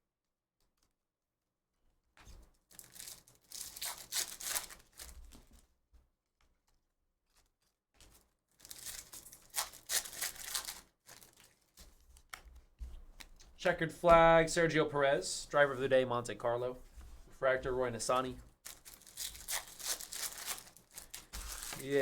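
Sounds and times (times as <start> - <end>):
foil pack ripping and crinkling: 2.7 - 5.6, 7.4 - 12.3, 18.6 - 22.0.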